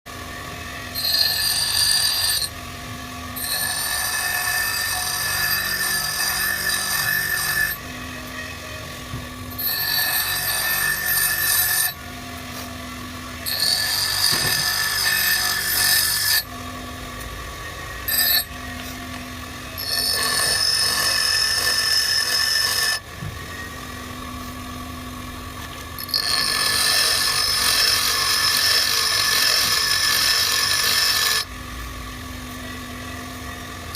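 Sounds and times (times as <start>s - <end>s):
grinder motor hum: 0.1s - 33.9s
tool bit grinding hiss: 0.8s - 2.6s, 3.4s - 7.8s, 9.5s - 12.0s, 13.4s - 16.5s, 18.1s - 19.0s, 19.8s - 23.0s, 26.0s - 31.5s.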